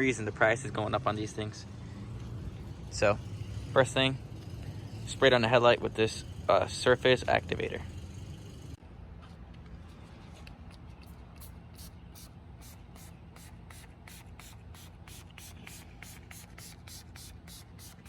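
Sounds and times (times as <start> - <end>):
spray bottle squirts: 11.4 - 18.0.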